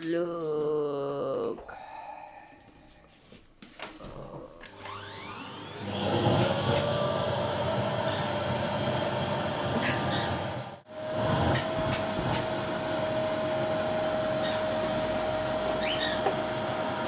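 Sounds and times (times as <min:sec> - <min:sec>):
vacuum cleaner motor whining: 0:04.6 - 0:17.0.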